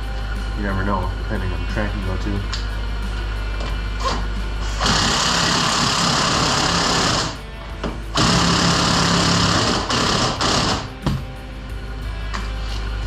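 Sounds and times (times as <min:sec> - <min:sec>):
impact wrench running: 0:00.0 - 0:11.4.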